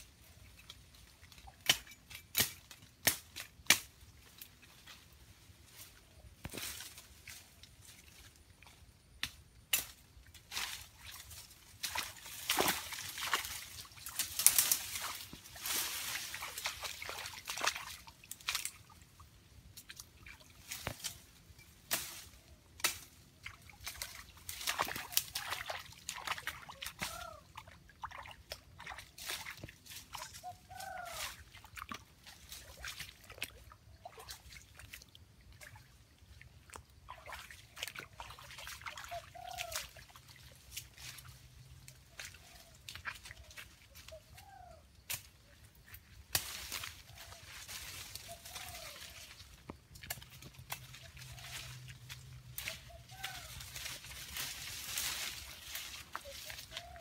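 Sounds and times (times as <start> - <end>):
water sloshing and splashing: 10.2 - 21.3, 23.1 - 45.1, 45.8 - 57.0.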